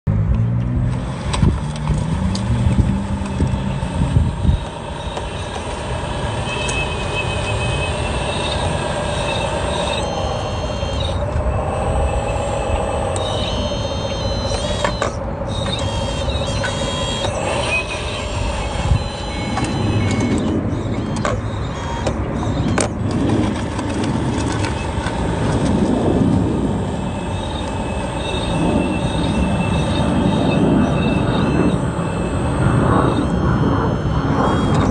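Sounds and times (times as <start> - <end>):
electric motors whining: 0.1 - 34.9
steady rushing noise: 0.1 - 34.9
sharp clicks: 13.1 - 26.5.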